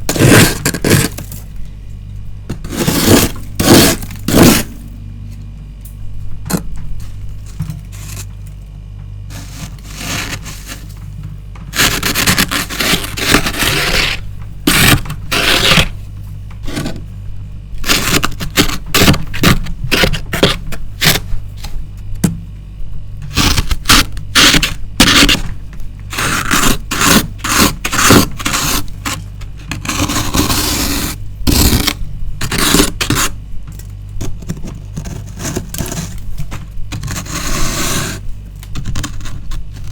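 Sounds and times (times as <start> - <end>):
frost scraped off freezer wall: 0.0 - 1.5, 2.5 - 4.9, 6.5 - 16.0, 16.6 - 17.1, 17.8 - 21.8, 23.3 - 33.4, 34.2 - 39.9
low hum: 0.0 - 26.2.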